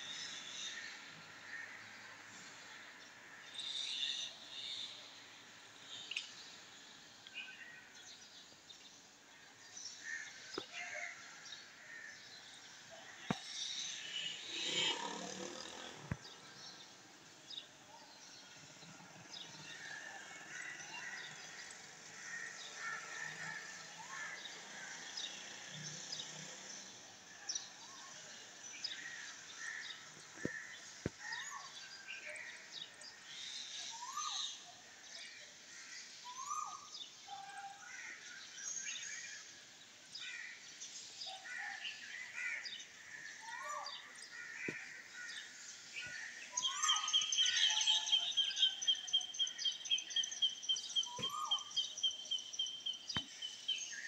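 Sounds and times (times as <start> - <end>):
birds chirping: 41.9 - 54.0.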